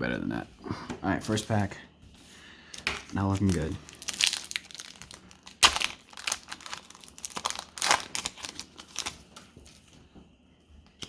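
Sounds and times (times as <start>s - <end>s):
plastic wrapper crinkling and tearing: 3.0s - 9.8s.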